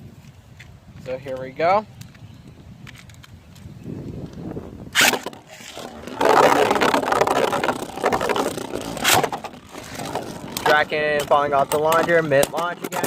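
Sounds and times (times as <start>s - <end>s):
spinning top launch: 4.9s - 10.7s.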